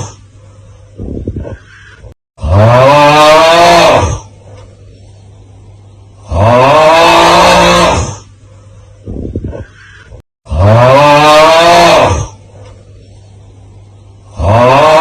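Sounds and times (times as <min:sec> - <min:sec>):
rattling snore: 0:06.2 - 0:08.3, 0:10.5 - 0:12.4, 0:14.2 - 0:15.0.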